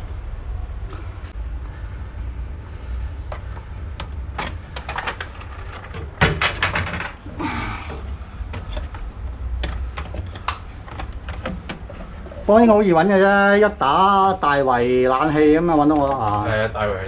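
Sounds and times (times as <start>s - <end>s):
steady low rumble: 0.0s - 6.2s
clicks and knocks of parts: 3.2s - 12.5s.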